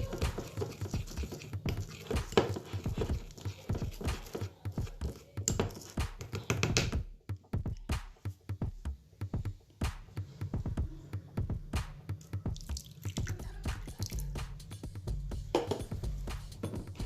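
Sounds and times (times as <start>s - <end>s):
slime stirred in a bowl: 0.0s - 7.0s, 12.2s - 14.5s.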